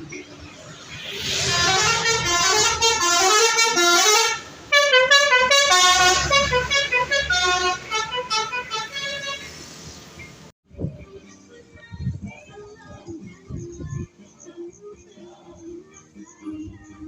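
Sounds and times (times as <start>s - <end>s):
bus horn playing melody: 1.2s - 9.6s.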